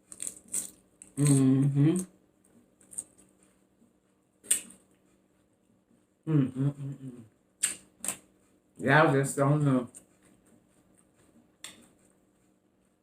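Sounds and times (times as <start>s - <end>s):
woman humming mmm: 1.2s - 2.1s, 6.3s - 7.3s
lip smack: 4.4s - 4.8s, 7.6s - 8.2s.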